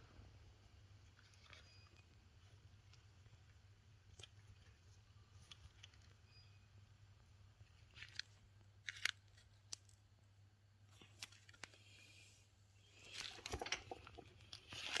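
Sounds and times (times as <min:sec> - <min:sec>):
handling rustle: 0:10.8 - 0:15.0.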